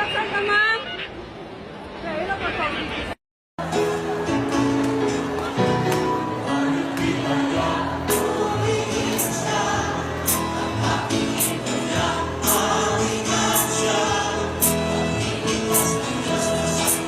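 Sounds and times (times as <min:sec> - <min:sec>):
choir singing held notes: 0:03.6 - 0:17.0
steady beat: 0:10.3 - 0:10.5.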